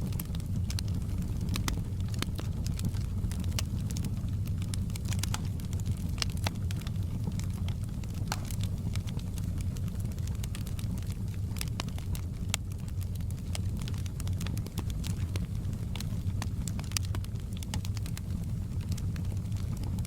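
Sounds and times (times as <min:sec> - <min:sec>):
fire crackling and popping: 0:00.0 - 0:20.0
fire flames rumbling: 0:00.0 - 0:20.0.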